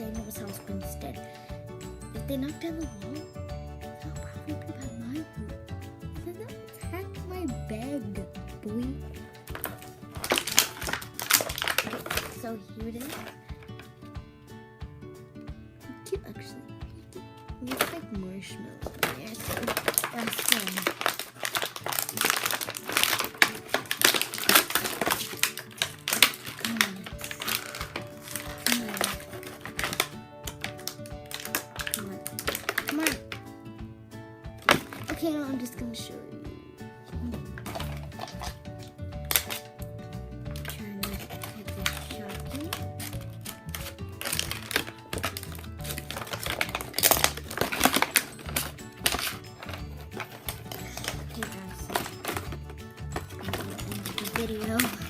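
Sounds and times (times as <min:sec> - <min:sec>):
plastic packaging crinkling: 0:09.3 - 0:13.8, 0:17.6 - 0:18.1, 0:18.8 - 0:33.5, 0:34.6 - 0:35.4, 0:37.2 - 0:39.9, 0:40.5 - 0:55.0
plastic toy pieces clicking: 0:09.5 - 0:12.4, 0:18.8 - 0:33.4, 0:37.6 - 0:38.6, 0:39.3 - 0:39.7, 0:40.6 - 0:55.0.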